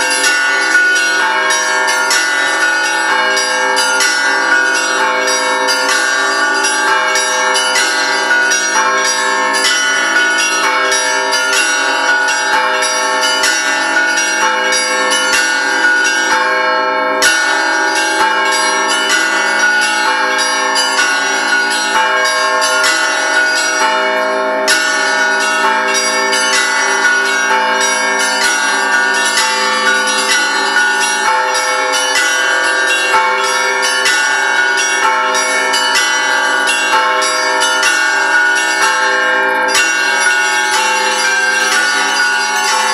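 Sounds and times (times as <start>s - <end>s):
church bells pealing: 0.0s - 42.9s.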